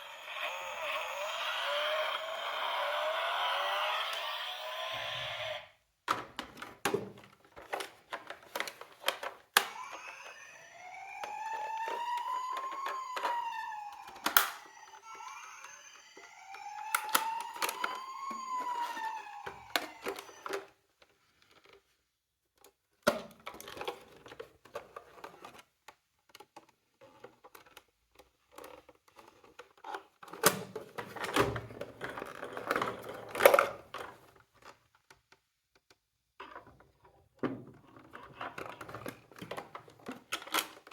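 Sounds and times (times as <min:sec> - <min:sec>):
toy siren wailing: 0:00.0 - 0:05.8, 0:09.6 - 0:20.7
toy cars clicking and knocking: 0:00.0 - 0:20.8, 0:22.6 - 0:37.1.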